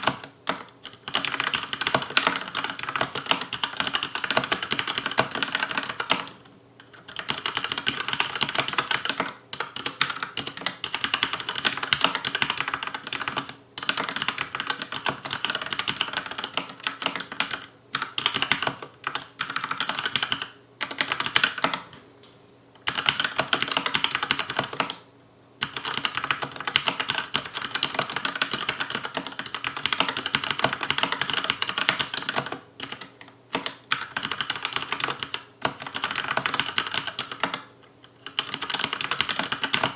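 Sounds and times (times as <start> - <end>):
mechanical keyboard typing: 0.0 - 22.0, 22.8 - 25.0, 25.6 - 39.9.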